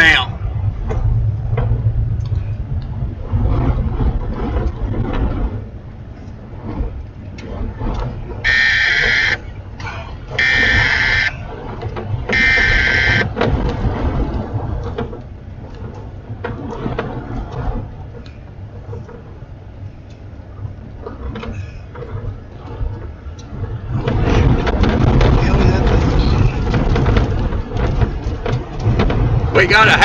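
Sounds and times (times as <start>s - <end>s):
strong wind: 0.0s - 30.0s
vehicle rumble: 0.0s - 30.0s
loud electronic alert beeps: 8.5s - 9.4s, 10.4s - 11.3s, 12.4s - 13.3s.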